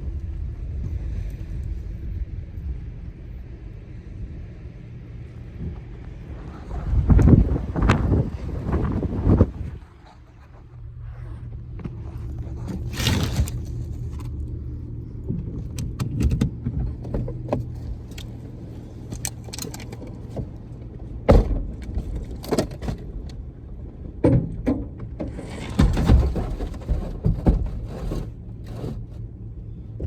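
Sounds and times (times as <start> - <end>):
clicks and rattles: 12.6 - 14.5, 15.6 - 20.7, 21.5 - 23.1
keys jangling: 19.1 - 20.3.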